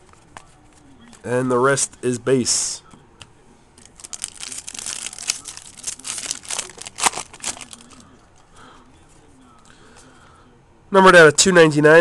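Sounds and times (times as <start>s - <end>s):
wrapper tearing and crinkling: 3.8s - 8.0s.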